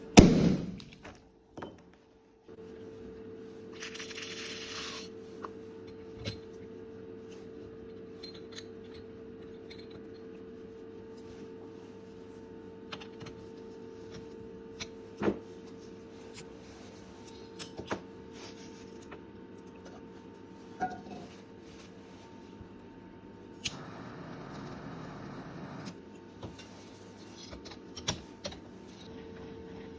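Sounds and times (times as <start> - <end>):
popcorn machine hum: 23.6 - 26.1, 28.7 - 29.9.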